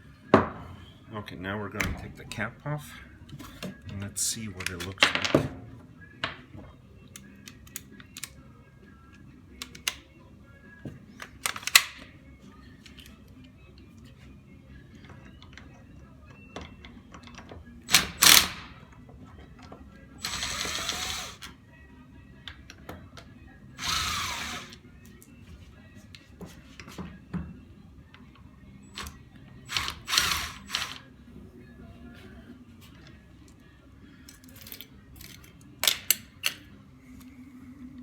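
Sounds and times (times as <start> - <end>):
metal parts clicking and knocking: 34.3 - 36.6.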